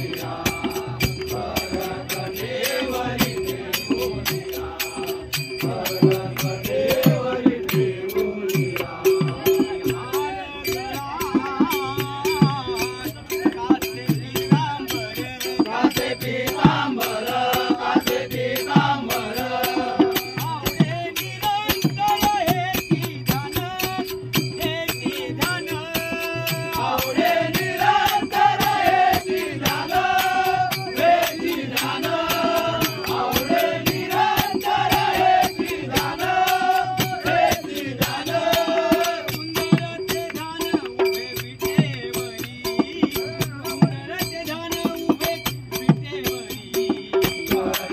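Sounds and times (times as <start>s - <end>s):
lead voice singing: 0.0s - 47.9s
rattling percussion: 0.0s - 47.9s.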